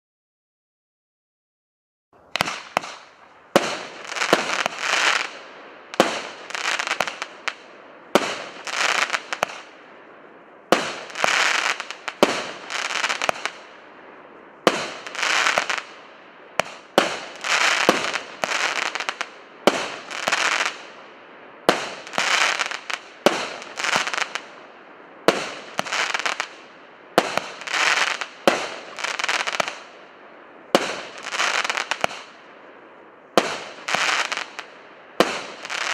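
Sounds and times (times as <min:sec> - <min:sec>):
firework launch pops: 0:02.3 - 0:05.3, 0:16.6 - 0:20.8
firework hissing: 0:02.3 - 0:09.7, 0:10.7 - 0:13.6.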